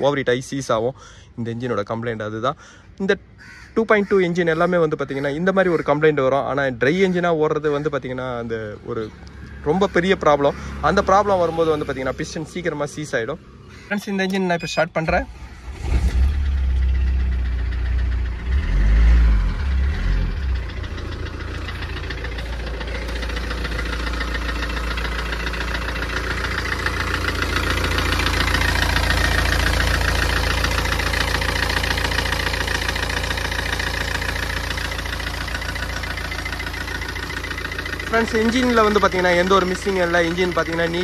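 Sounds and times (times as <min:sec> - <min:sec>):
diesel engine idling: 0:00.0 - 0:41.0
engine knocking: 0:16.3 - 0:41.0.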